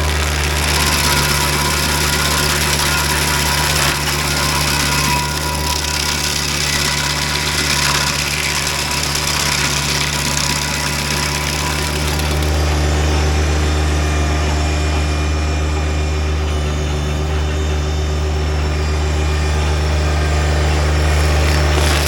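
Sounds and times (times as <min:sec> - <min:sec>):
stump grinder chipping wood: 0:00.0 - 0:13.7, 0:20.4 - 0:22.0
tractor engine drone: 0:00.0 - 0:22.0.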